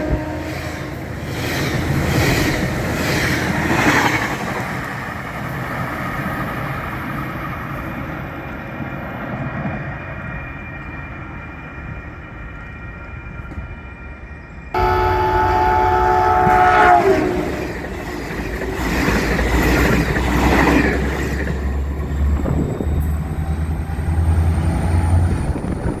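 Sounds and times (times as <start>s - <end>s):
train horn blast: 0.0s - 1.0s, 14.8s - 18.0s
train passing rumble: 0.0s - 26.0s.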